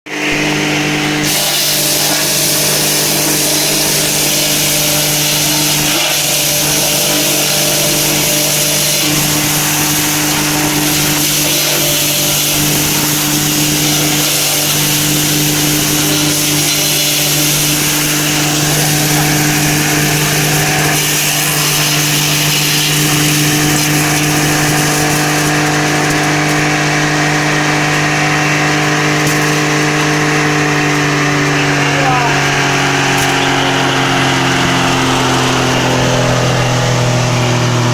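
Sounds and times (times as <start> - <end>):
wood chipper grinding branches: 0.1 - 37.9.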